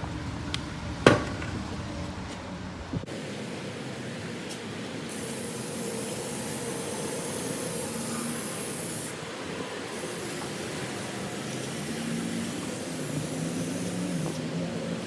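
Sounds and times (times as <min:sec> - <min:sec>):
pressure washer spraying water: 0:05.1 - 0:15.0.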